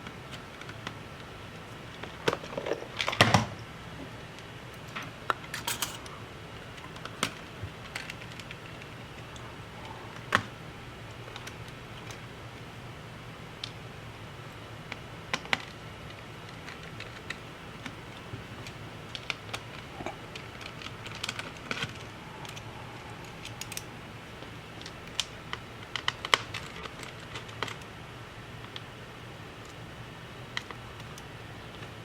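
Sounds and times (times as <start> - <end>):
steady low hum: 0.0 - 32.0
hand tools clicking and tapping: 5.0 - 6.1.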